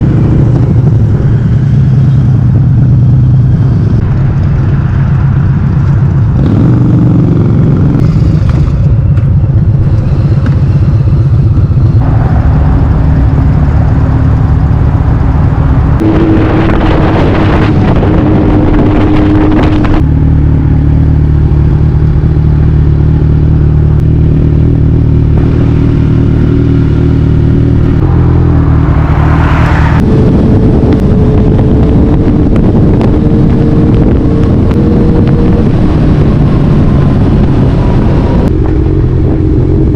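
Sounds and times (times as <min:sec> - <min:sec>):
motorcycle engine cruising: 0:00.0 - 0:39.9
wind noise on microphone: 0:00.0 - 0:39.9.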